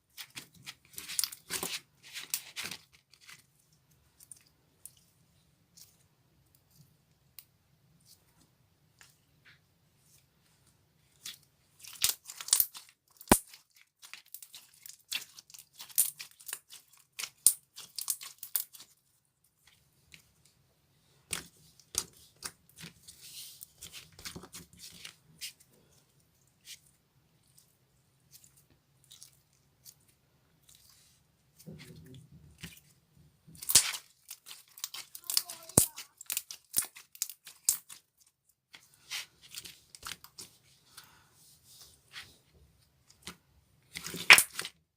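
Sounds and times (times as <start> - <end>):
slime crackling and popping: 11.8 - 18.9, 33.6 - 38.0, 43.9 - 44.8.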